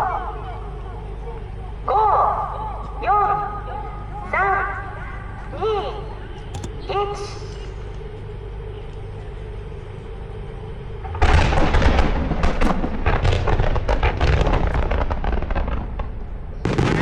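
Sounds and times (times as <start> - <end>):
low fireworks rumble: 11.3 - 17.0
fireworks booming and cracking: 12.9 - 16.0.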